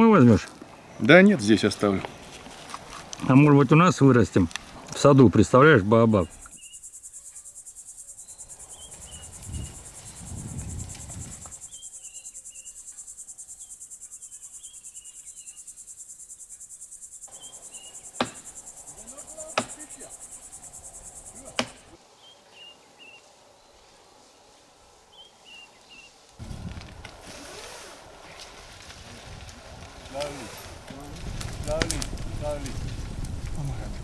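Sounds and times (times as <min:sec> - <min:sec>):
insects shrilling: 0:00.0 - 0:34.0
bird-like chirps: 0:06.2 - 0:23.2.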